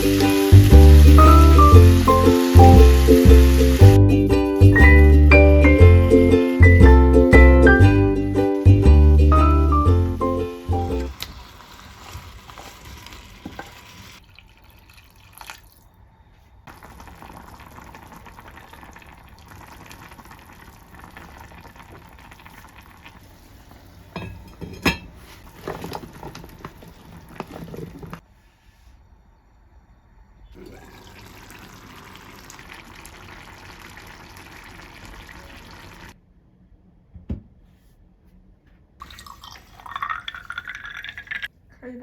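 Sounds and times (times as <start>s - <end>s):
running liquid: 0.0s - 4.0s, 10.6s - 15.9s, 16.7s - 23.6s, 30.6s - 36.2s, 39.0s - 41.5s.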